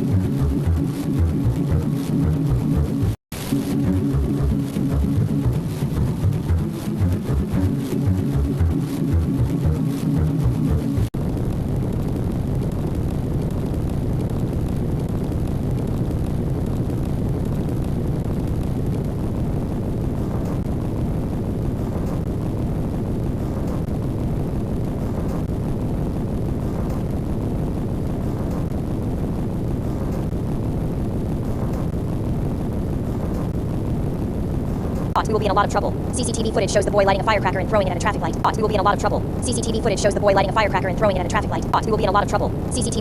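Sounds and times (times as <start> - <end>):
music: 0.0 - 11.1.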